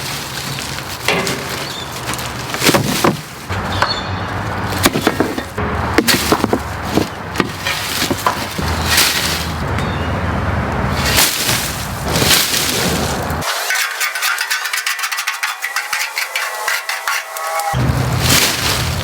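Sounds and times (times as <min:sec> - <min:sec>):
wood cracking and knocking: 0:00.0 - 0:09.9.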